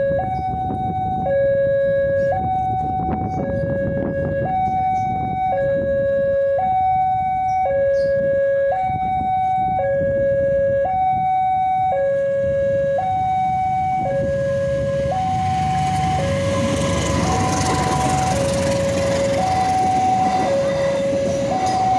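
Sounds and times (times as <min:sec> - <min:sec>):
level crossing two-tone alarm: 0:00.0 - 0:21.9
approaching train rush: 0:13.1 - 0:21.9.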